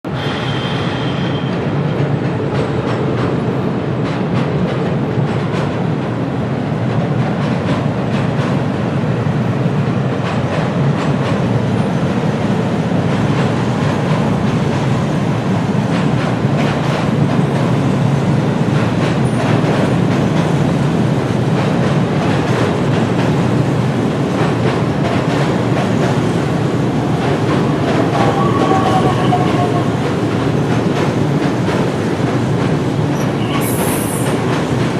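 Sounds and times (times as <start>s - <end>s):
train rumbling on rails: 0.0s - 34.9s
faint wheel squeal: 0.2s - 1.5s.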